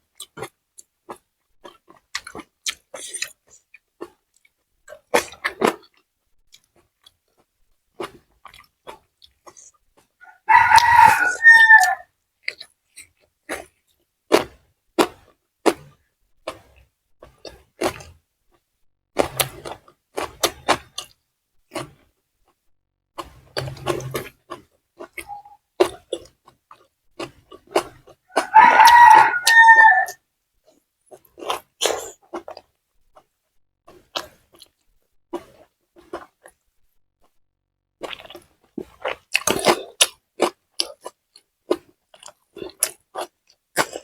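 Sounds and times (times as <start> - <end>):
crisp bites and wet chewing: 0.1 - 10.1, 10.7 - 18.2, 19.2 - 22.1, 23.2 - 29.8, 30.7 - 33.3, 33.9 - 36.6, 38.0 - 44.0
rooster crowing: 10.2 - 12.1, 28.3 - 30.2.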